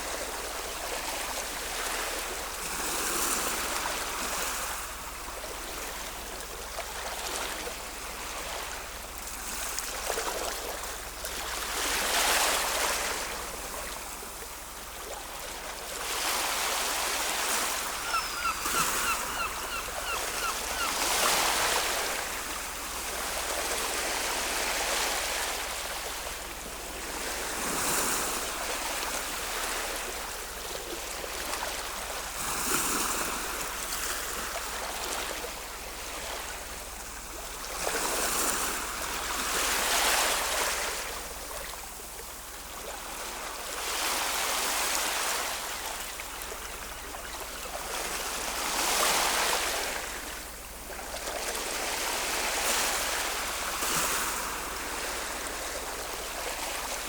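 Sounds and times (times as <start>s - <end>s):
ocean waves breaking: 0.0s - 57.0s
bird chirping: 17.9s - 21.1s.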